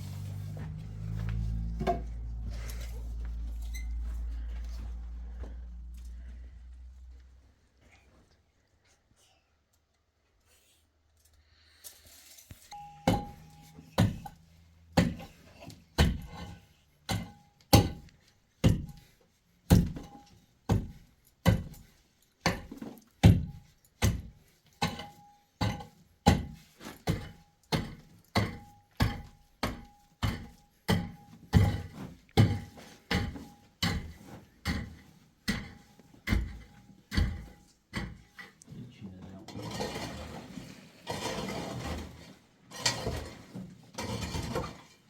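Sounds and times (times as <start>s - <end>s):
hand tool heavy blows thunking: 0.0s - 3.0s, 12.8s - 38.6s.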